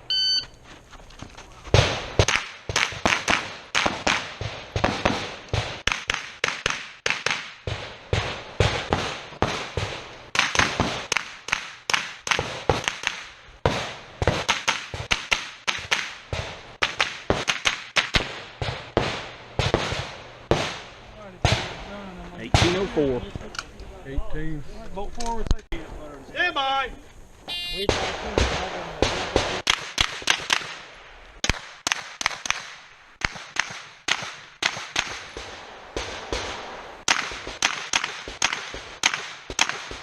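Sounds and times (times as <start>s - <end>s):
rapid rifle shots: 1.7s - 21.9s, 27.8s - 40.0s.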